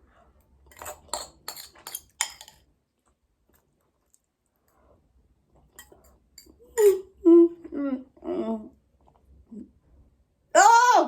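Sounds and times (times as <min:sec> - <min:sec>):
utensil clinking against bowl: 0:00.7 - 0:02.6.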